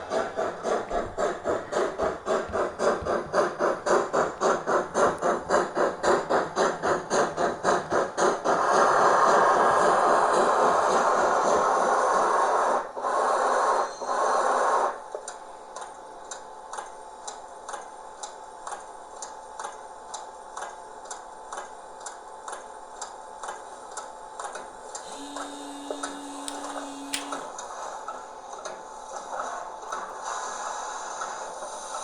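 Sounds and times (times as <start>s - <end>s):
model train ticking on track: 0.0s - 12.3s, 15.2s - 27.7s.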